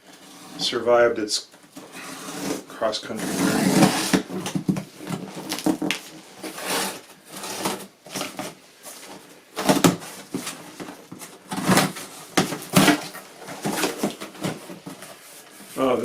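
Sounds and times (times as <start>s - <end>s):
cardboard box rustling and tearing: 3.2s - 8.6s, 9.6s - 15.2s.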